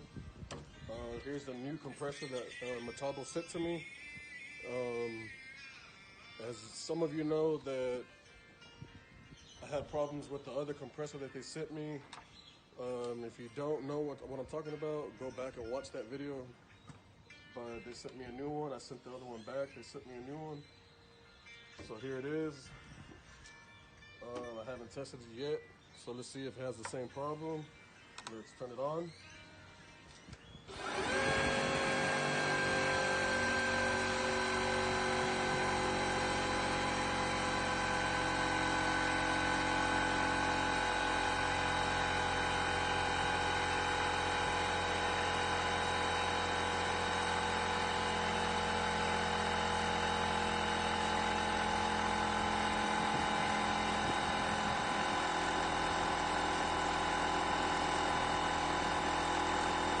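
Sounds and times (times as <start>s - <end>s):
air compressor whining: 30.6s - 60.0s.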